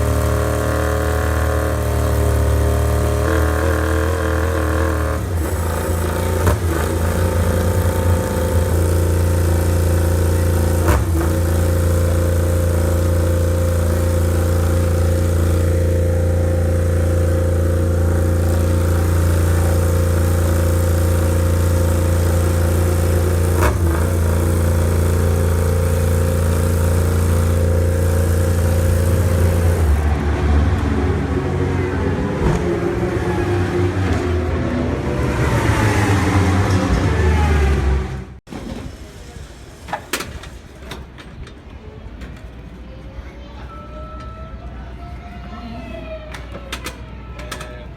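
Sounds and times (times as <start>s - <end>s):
motorcycle engine fast idle: 0.0s - 30.0s.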